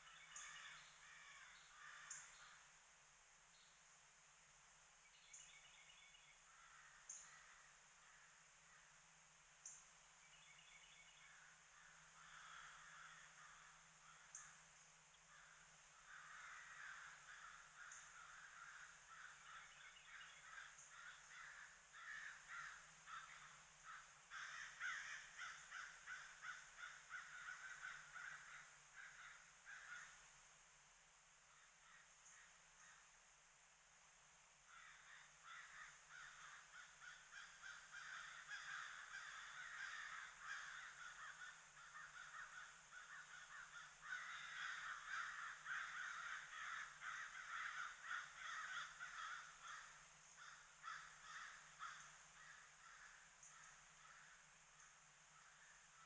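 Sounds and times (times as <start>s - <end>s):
crows cawing: 0.4s - 2.4s, 6.5s - 8.9s, 11.3s - 14.5s, 15.3s - 30.2s, 31.5s - 32.1s, 34.7s - 54.4s
insects hissing: 9.6s - 56.0s.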